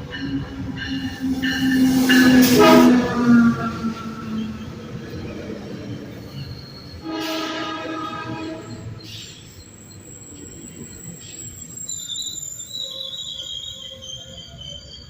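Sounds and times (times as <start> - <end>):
train rumbling on rails: 0.0 - 15.0
high-pitched wheel squeal: 0.1 - 15.0
train horn blast: 1.1 - 4.8, 7.0 - 9.0.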